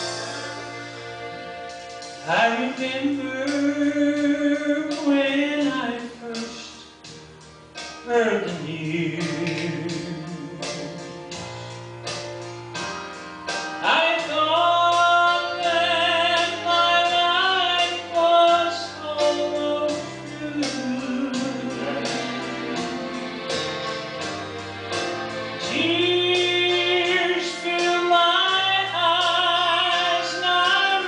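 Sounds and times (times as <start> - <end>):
gospel group singing: 0.0 - 1.7, 20.0 - 24.5
instrumental accompaniment: 0.0 - 31.0.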